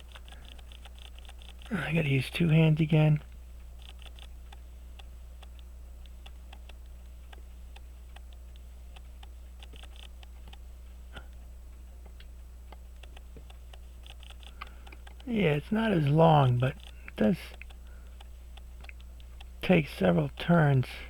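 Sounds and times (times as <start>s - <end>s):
low electrical hum: 0.0s - 21.0s.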